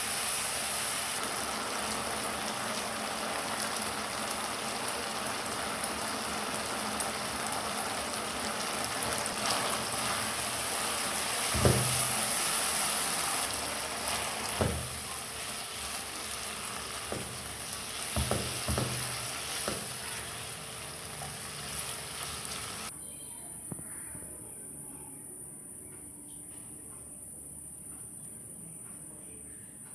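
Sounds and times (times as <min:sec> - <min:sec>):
beef sizzling in a pan: 0:00.0 - 0:22.9
utensil knocking against pan: 0:11.5 - 0:12.1, 0:17.1 - 0:17.5, 0:18.1 - 0:20.0.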